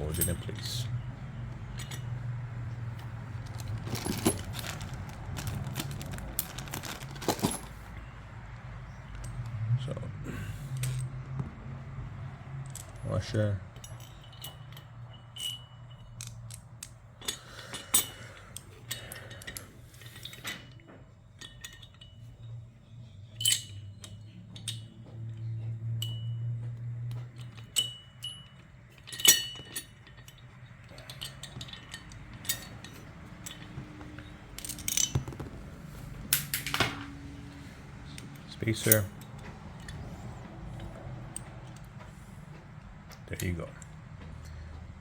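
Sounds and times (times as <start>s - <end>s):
metal hardware clinking: 0.0s - 8.1s, 12.6s - 42.2s, 43.1s - 44.6s
steady low hum: 0.0s - 45.0s.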